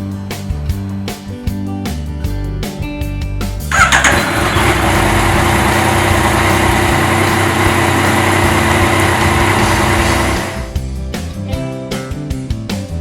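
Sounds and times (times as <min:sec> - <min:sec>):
motorcycle engine running: 0:03.7 - 0:10.9.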